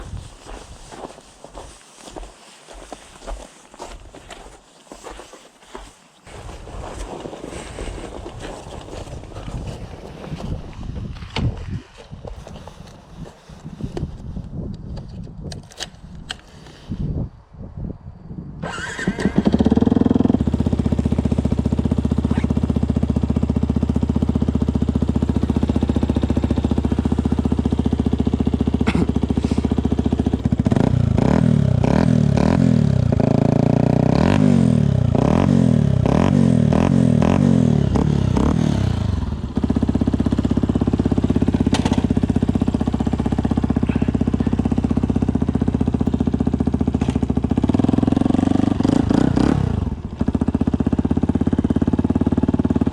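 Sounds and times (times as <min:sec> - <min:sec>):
motorcycle engine revving: 0:18.6 - 0:52.9.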